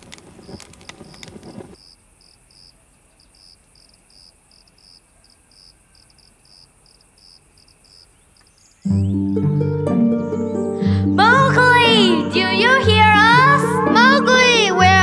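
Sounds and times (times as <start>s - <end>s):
crickets chirping: 0.0s - 8.9s
plucked harp-like music: 8.9s - 15.0s.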